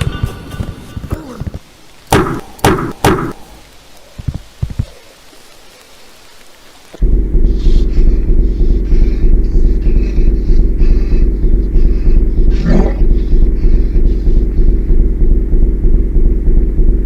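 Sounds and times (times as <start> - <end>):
heavy thuds: 7.0 - 17.0
loud low rumble: 7.0 - 17.0.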